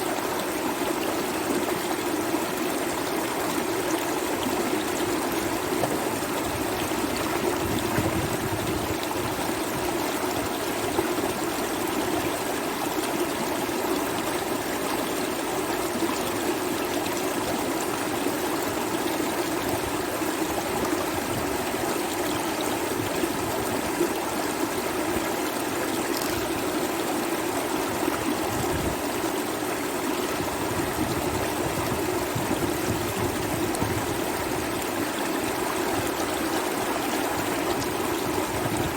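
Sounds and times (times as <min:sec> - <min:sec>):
flooded river rushing: 0:00.0 - 0:38.9.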